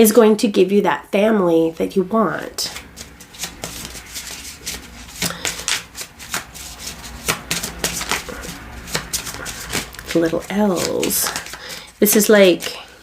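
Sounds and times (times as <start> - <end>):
cards shuffling: 2.6 - 13.0.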